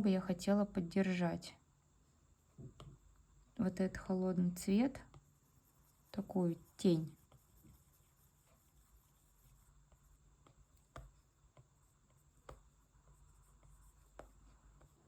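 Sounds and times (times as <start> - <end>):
stylus tapping on glass screen: 10.5 - 11.2.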